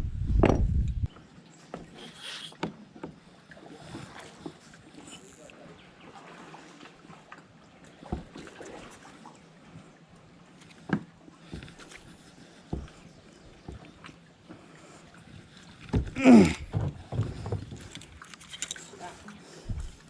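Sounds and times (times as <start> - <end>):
faint water sounds: 1.0 - 20.0
kayak knocks: 8.1 - 8.4, 12.7 - 14.0, 15.9 - 18.0.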